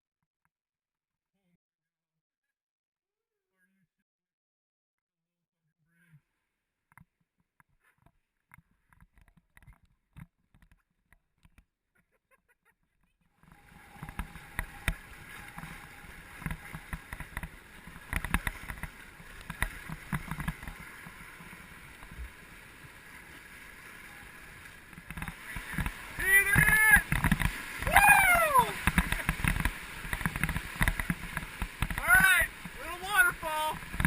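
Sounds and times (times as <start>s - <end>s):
faint clicks: 13.4s - 21.2s
river water rushing and splashing: 13.4s - 34.0s.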